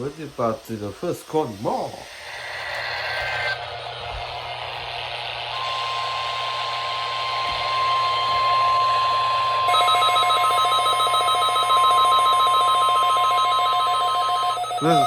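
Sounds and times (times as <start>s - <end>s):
radio hiss: 0.0s - 8.2s
steady warning alarm tone: 5.5s - 15.0s
pulsing electronic beeps: 9.7s - 15.0s.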